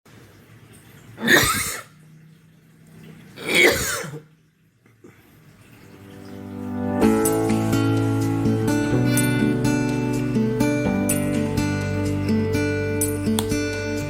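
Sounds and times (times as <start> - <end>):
person coughing: 1.2 - 1.9, 3.4 - 4.2.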